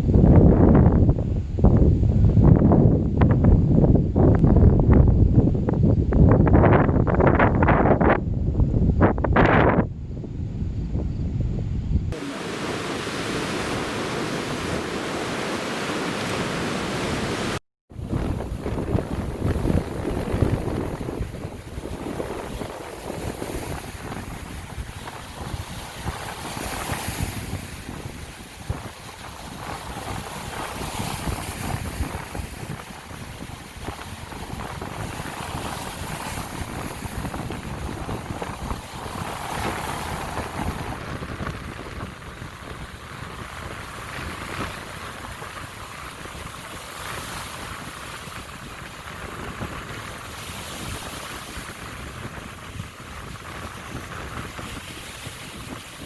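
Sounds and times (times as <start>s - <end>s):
wind buffeting microphone: 0.0s - 56.0s
waves washing onto shore: 12.1s - 56.0s.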